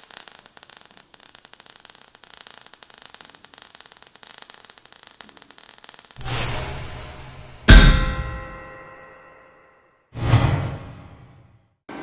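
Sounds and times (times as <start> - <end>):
crackling static hiss: 0.0 - 7.7.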